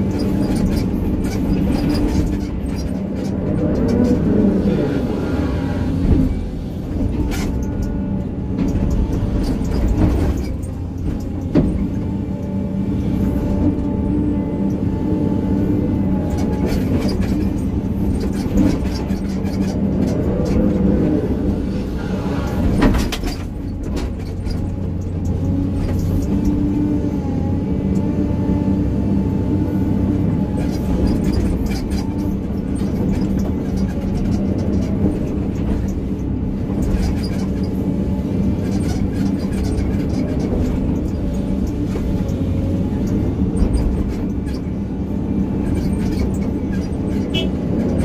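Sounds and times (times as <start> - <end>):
excavator diesel engine running: 0.0 - 48.0.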